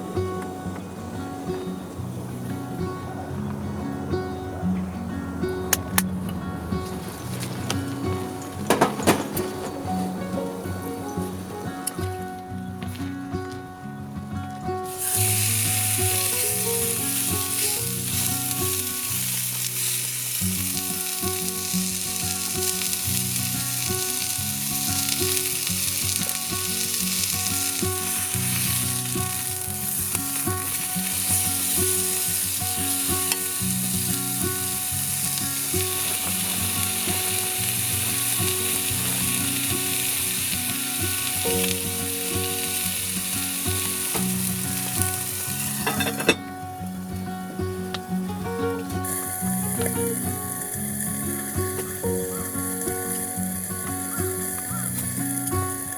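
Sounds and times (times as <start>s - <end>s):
soft background music: 0.0s - 55.9s
food sizzling in a pan: 14.8s - 55.9s.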